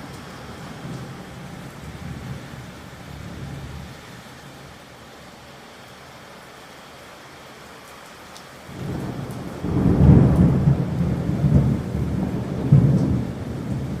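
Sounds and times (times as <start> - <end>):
rain hiss: 0.0 - 14.0
thunder rumbling: 8.7 - 14.0.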